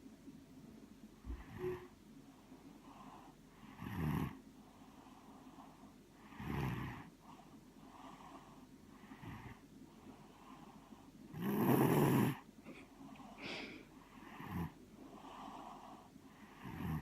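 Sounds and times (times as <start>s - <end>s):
quiet breathing: 1.0s - 17.0s
person snoring: 6.4s - 7.1s, 11.4s - 12.4s, 16.5s - 17.0s.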